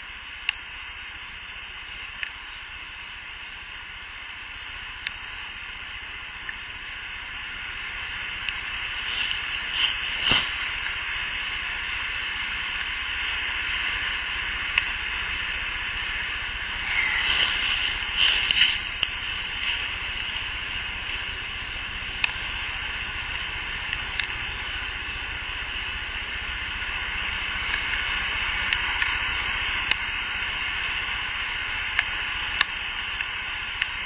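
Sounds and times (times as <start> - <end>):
recording hiss: 0.0 - 34.0
faint sharp clicks: 2.1 - 2.4, 14.7 - 15.0, 32.0 - 34.0.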